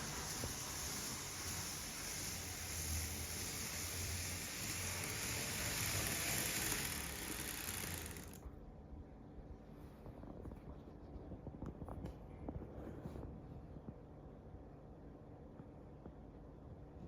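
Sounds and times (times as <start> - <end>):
train running hiss: 0.0 - 8.4
pulsing low motor hum: 0.0 - 8.8.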